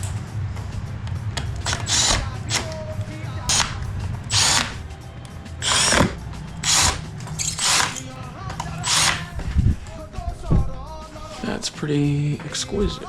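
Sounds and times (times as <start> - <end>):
background music: 0.0 - 13.0
cordless drill bursts: 1.6 - 2.8, 3.4 - 4.8, 5.6 - 9.4.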